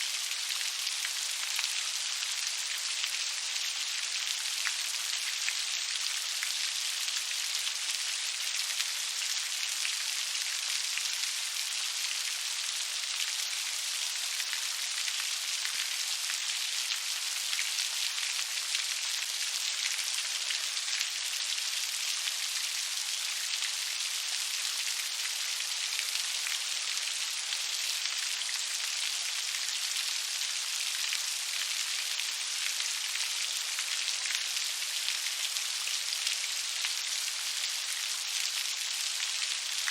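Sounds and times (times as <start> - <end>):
rain falling: 0.0 - 39.9.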